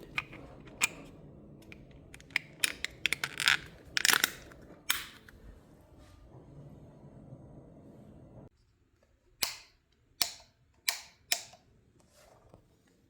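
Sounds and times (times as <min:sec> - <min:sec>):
plastic casing clicks: 0:00.0 - 0:05.3.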